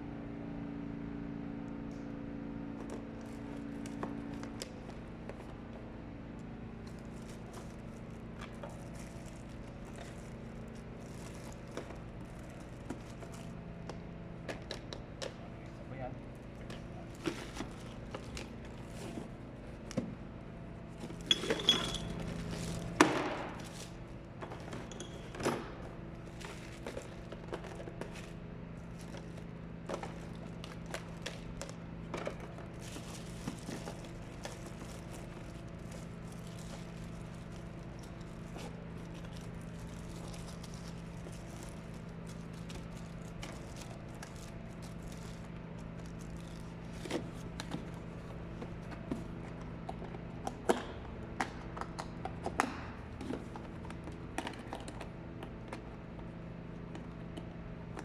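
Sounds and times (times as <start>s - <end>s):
electrical hum: 0.0s - 58.0s.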